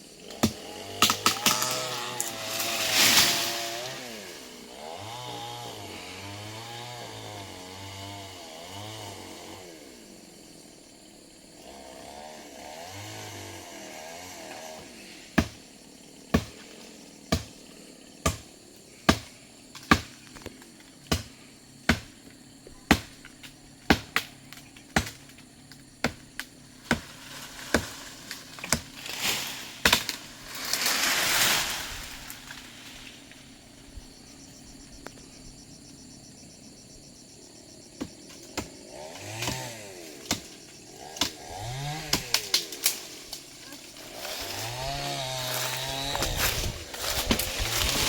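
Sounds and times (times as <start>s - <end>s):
blade chopping wood: 0.3s - 3.7s, 15.4s - 15.6s, 16.3s - 16.6s, 19.1s - 21.3s, 21.9s - 22.2s, 22.9s - 23.3s, 23.9s - 25.3s, 26.0s - 30.2s, 38.0s - 43.0s, 44.2s - 48.0s
rustling rush of noise: 30.3s - 33.3s.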